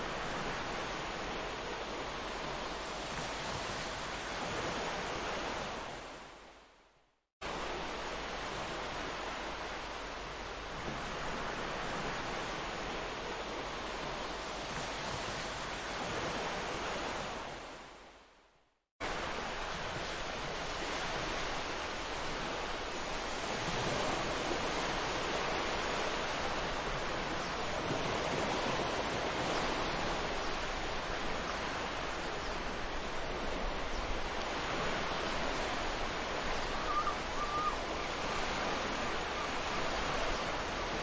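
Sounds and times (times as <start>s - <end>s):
ocean waves breaking: 19.0s - 41.0s
bird call: 36.7s - 37.9s.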